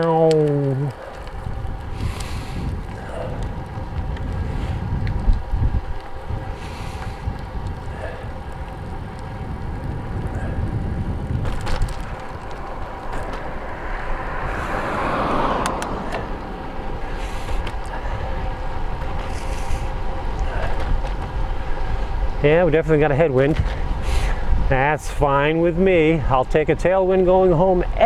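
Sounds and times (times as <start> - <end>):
bike rattling: 0.0 - 28.0
tyre and road noise: 0.0 - 28.0
wind buffeting microphone: 0.0 - 28.0
loud rush of air: 1.8 - 3.7, 4.3 - 5.0, 5.7 - 8.4, 9.7 - 18.6.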